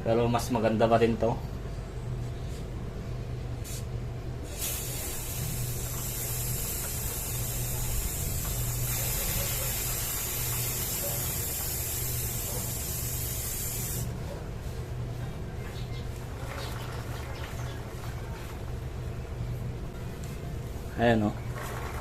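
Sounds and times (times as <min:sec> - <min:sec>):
steady low hum: 0:00.0 - 0:22.0
aerosol spray hissing: 0:04.5 - 0:14.1.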